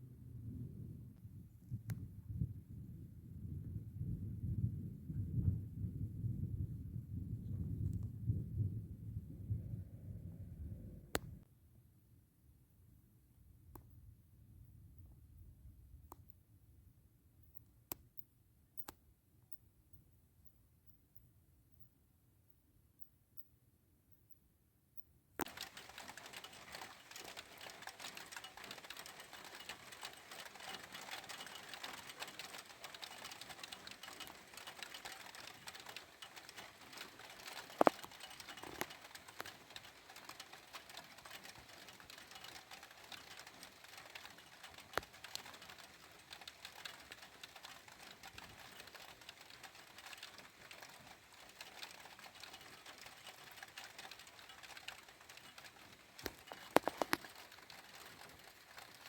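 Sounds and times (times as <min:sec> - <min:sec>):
rain pattering on hard surface: 0:25.4 - 0:59.0.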